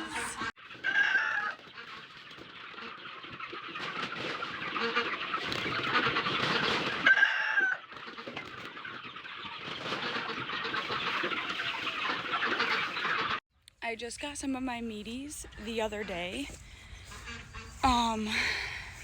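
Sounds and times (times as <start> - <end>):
chicken squawk: 0.0 - 3.5, 4.2 - 13.4
chickens clucking: 0.0 - 13.4, 16.0 - 19.0.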